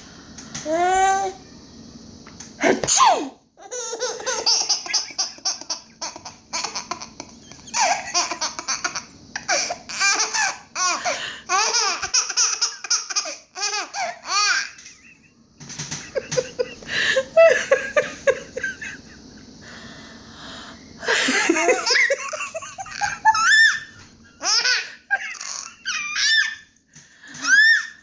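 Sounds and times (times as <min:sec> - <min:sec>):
adult fake sneeze: 0:02.6 - 0:03.4
baby laughing hysterically: 0:03.6 - 0:15.1, 0:15.9 - 0:19.2, 0:21.0 - 0:26.6, 0:27.4 - 0:28.0.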